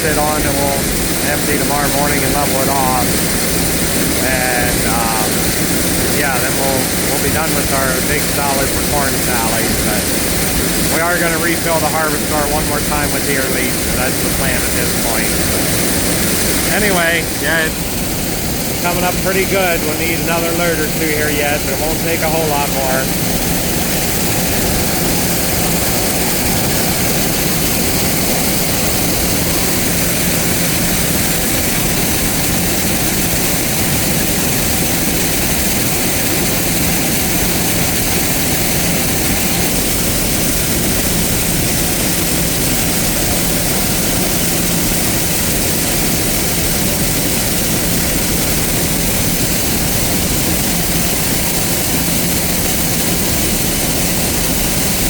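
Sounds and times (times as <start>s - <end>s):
machinery low hum: 0.0s - 55.0s
silage blower rushing: 0.0s - 55.0s.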